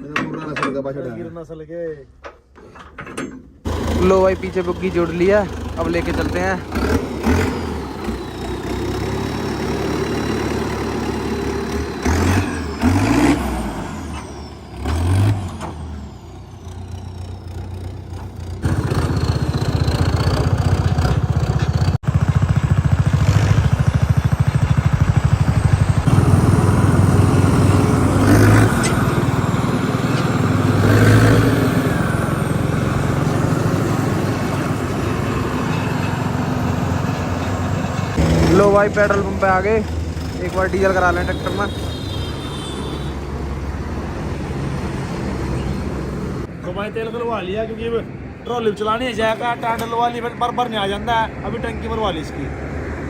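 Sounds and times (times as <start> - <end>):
diesel tractor engine chugging: 3.7 - 43.0.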